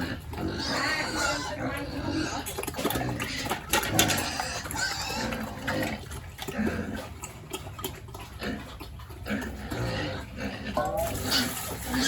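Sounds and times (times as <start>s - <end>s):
pigs grunting: 0.0s - 12.0s
water running and splashing: 10.8s - 12.0s.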